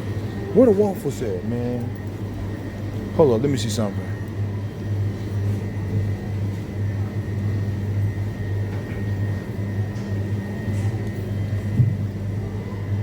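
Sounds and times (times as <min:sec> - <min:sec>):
refrigeration and ventilation hum: 0:00.0 - 0:13.0.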